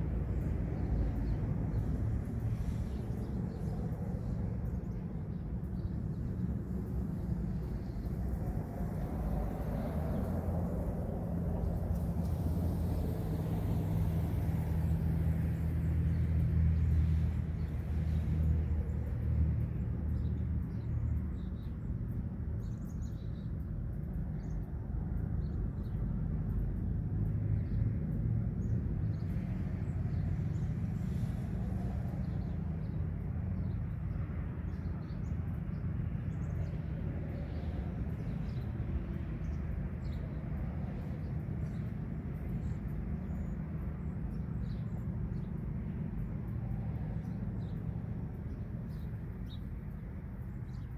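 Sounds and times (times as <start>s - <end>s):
vehicle engine rumbling past: 8.2s - 19.6s
small birds chirping: 28.6s - 50.9s.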